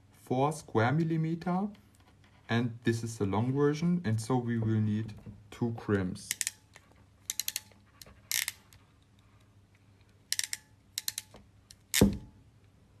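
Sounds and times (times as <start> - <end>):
crimping tool ratchet clicks: 6.2 - 8.8, 10.3 - 12.2
heavy clunk of crimping tool: 11.9 - 12.3.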